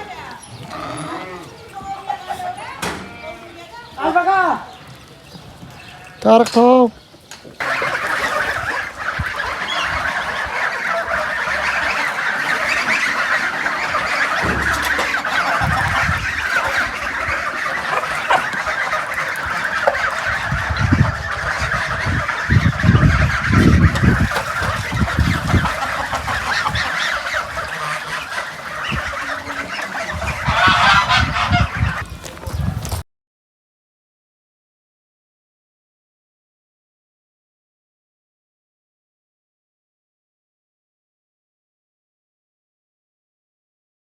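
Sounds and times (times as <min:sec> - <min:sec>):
poultry honking and cackling: 0:00.0 - 0:04.3, 0:07.6 - 0:32.3
low thumps: 0:13.9 - 0:18.7.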